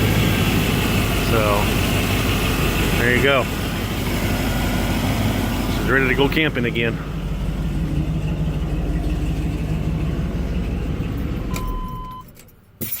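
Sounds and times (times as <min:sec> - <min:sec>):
engine idling: 0:00.0 - 0:12.3
short beep: 0:11.5 - 0:12.3.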